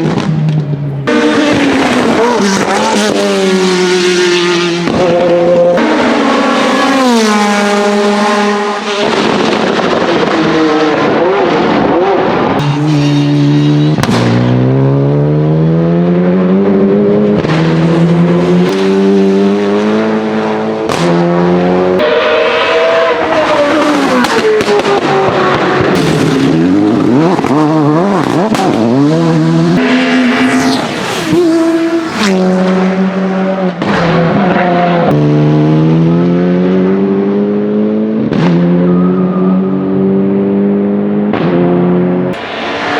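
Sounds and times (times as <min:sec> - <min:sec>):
race car engine revving: 0:00.0 - 0:42.9
exhaust pops and bangs: 0:04.8 - 0:05.3, 0:14.0 - 0:14.6, 0:20.8 - 0:21.2, 0:24.0 - 0:28.9.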